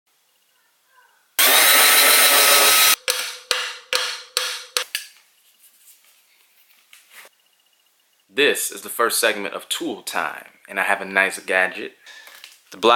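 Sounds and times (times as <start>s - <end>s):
power drill whirring: 1.4s - 3.0s
ringing hammer blows: 1.4s - 4.8s.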